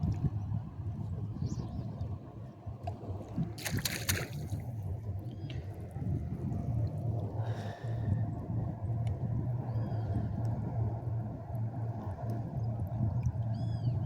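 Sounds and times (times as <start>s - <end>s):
steady low rumble: 0.0s - 14.0s
water splash: 3.4s - 4.7s.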